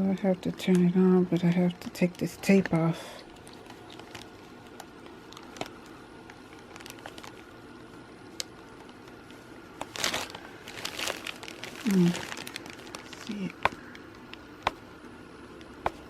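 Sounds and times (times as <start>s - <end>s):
tape rustle: 1.8s - 14.5s.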